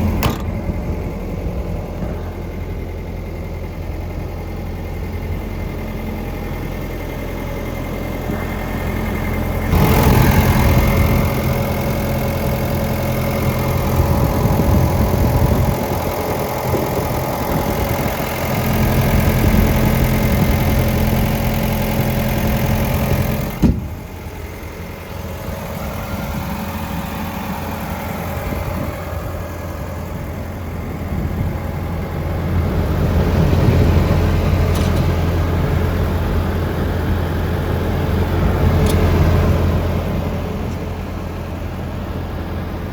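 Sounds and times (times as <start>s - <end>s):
excavator diesel engine running: 0.0s - 42.9s
sharp knock: 0.2s - 0.6s.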